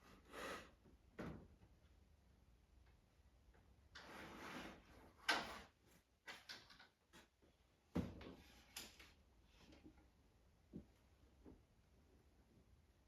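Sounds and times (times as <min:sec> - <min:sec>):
scrape or rustle: 0:04.0 - 0:05.9.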